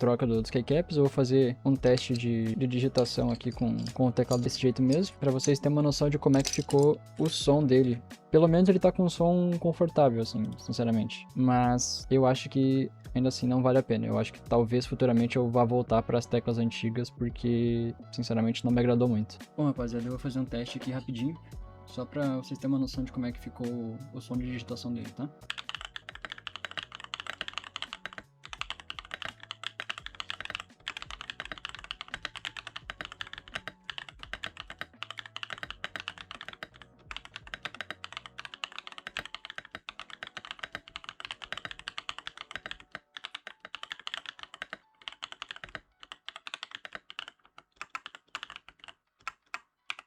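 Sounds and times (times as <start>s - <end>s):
mechanical keyboard typing: 1.8s - 7.4s, 25.5s - 50.0s.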